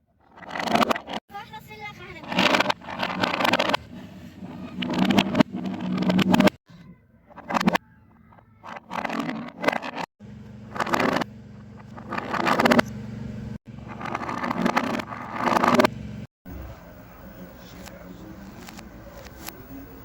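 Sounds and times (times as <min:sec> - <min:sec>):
fidget toys crackling and clicking: 0:00.3 - 0:06.6, 0:07.2 - 0:10.1, 0:10.7 - 0:12.9.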